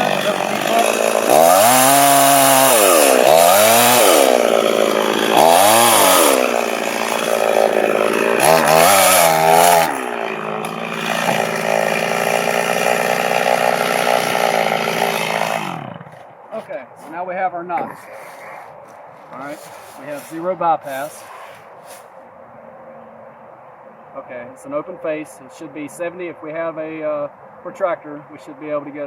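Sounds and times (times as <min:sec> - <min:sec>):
chainsaw cutting and revving: 0:00.0 - 0:16.3, 0:17.9 - 0:21.2.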